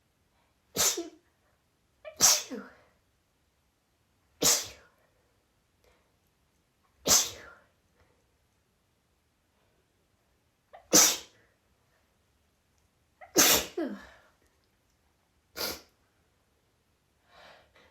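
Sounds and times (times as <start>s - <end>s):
woman sneezing: 0.8s - 1.2s, 2.1s - 2.8s, 4.4s - 4.8s, 7.1s - 7.5s, 10.8s - 11.3s, 13.2s - 14.2s.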